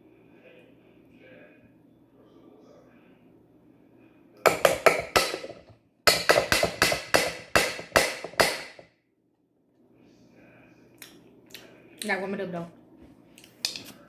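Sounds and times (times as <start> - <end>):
sharp knocks on hard surface: 4.5 - 8.9.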